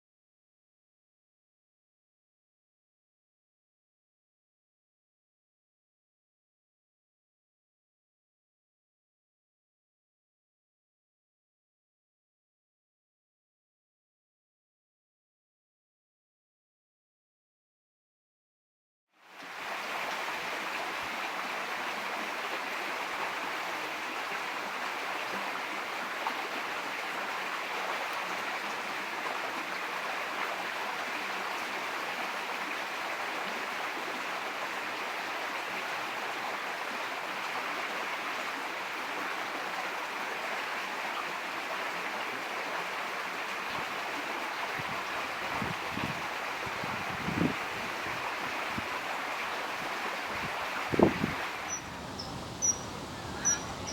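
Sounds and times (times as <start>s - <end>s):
stream water rushing: 19.2s - 53.9s.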